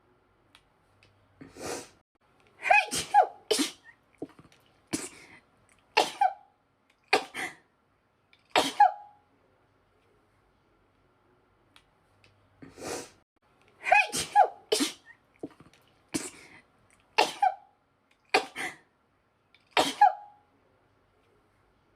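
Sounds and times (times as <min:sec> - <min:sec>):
woman sneezing: 0:02.6 - 0:03.9, 0:08.6 - 0:09.1, 0:13.8 - 0:15.1, 0:17.2 - 0:17.6, 0:19.8 - 0:20.3.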